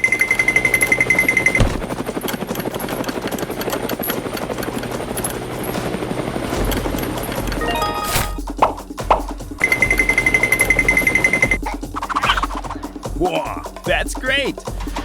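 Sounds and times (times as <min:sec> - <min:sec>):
engine chugging: 0:00.0 - 0:07.6, 0:08.4 - 0:15.0
steady high tone: 0:07.6 - 0:08.5.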